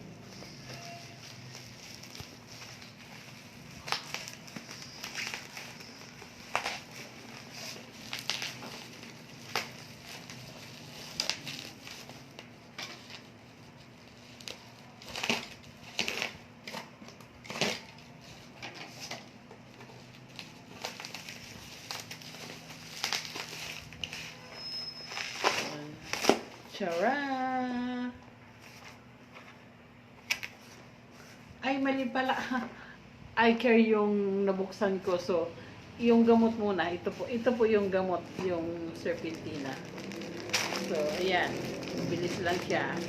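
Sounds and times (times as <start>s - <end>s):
plastic packaging crinkling: 0.2s - 27.1s, 37.0s - 43.0s.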